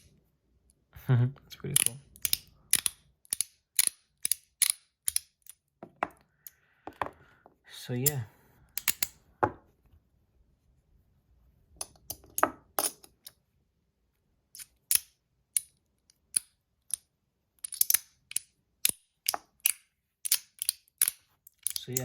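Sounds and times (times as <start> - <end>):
magnetic metal pieces clicking together: 1.7 - 5.7, 8.8 - 9.2, 14.5 - 22.0.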